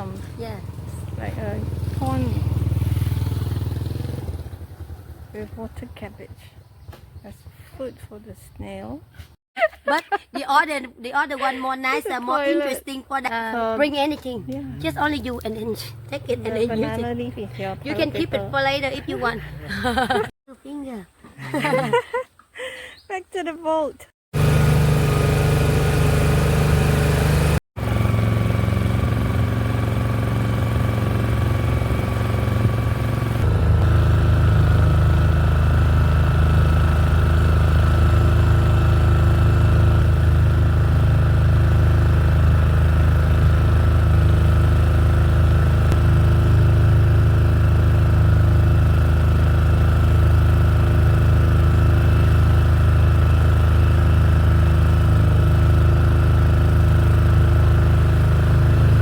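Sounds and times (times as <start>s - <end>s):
boat engine droning: 24.4s - 59.0s.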